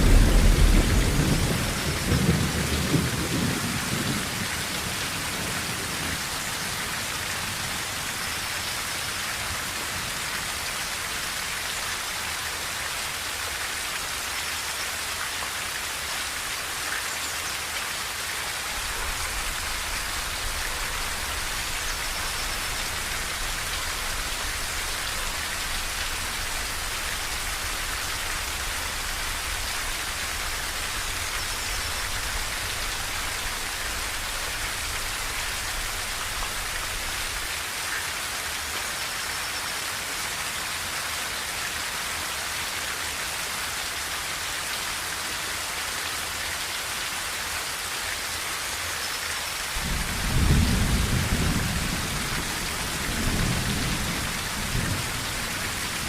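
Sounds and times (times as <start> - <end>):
rain on a tin roof: 0.0 - 56.0.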